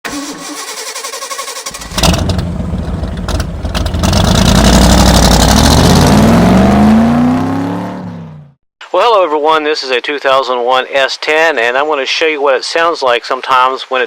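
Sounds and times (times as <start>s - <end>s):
car engine starting and revving: 0.1s - 8.6s.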